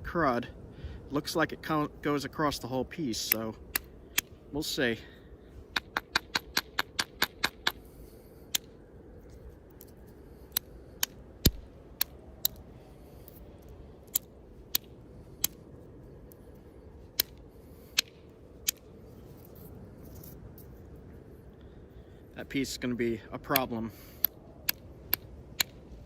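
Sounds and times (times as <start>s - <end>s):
stone striking stone taps: 5.7s - 7.8s.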